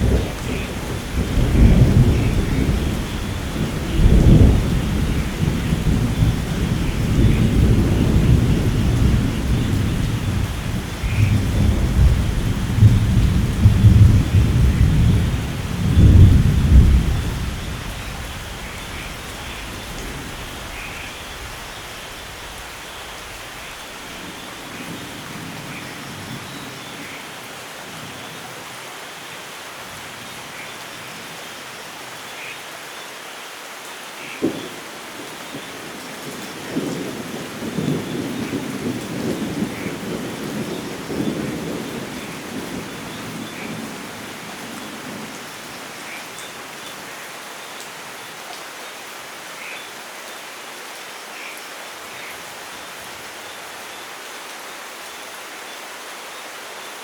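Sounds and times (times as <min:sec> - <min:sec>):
thunder rumbling: 0:00.0 - 0:26.4, 0:34.4 - 0:45.4
steady rain: 0:00.0 - 0:57.0.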